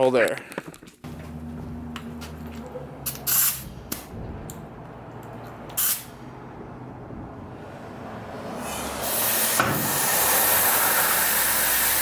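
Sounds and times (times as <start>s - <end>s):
steady low hum: 1.1s - 5.2s
air suspension hissing: 3.1s - 4.0s, 5.7s - 6.2s, 8.6s - 12.0s.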